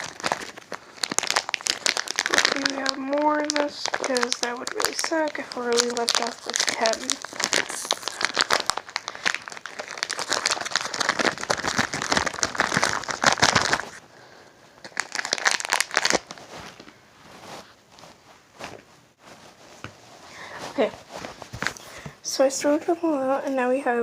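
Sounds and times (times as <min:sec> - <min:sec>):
plastic candy package crinkling: 0:00.0 - 0:14.0, 0:14.8 - 0:16.9.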